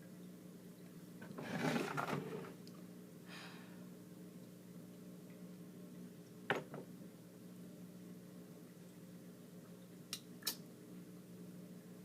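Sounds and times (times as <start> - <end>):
short breath: 3.3 - 3.8.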